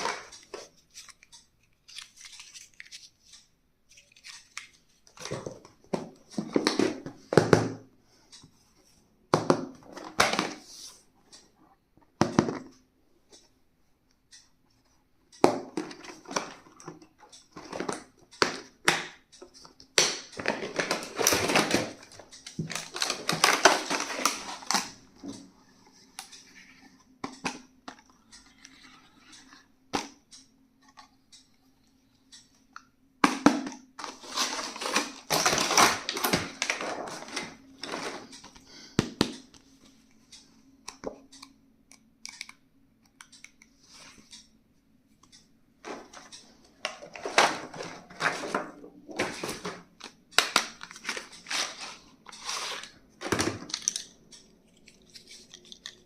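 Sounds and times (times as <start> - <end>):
plastic and paper crinkling: 0.0 - 5.8, 20.4 - 25.0, 34.0 - 38.6, 46.9 - 54.1.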